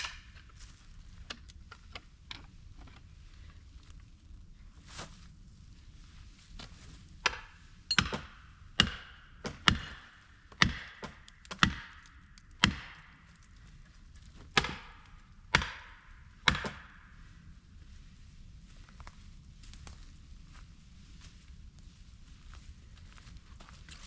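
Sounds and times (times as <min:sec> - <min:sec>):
tool striking wood: 0:07.2 - 0:13.2, 0:14.6 - 0:17.0.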